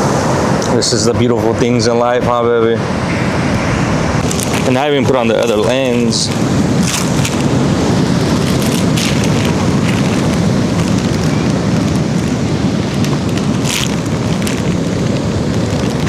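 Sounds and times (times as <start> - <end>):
ocean surf rushing: 0.0 - 16.0
wind buffeting microphone: 0.0 - 16.0
hissing washes: 4.2 - 16.0.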